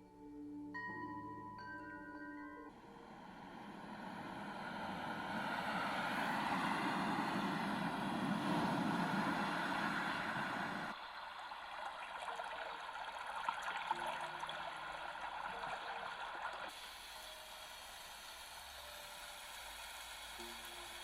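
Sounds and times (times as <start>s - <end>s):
white noise machine rushing: 2.9s - 11.0s.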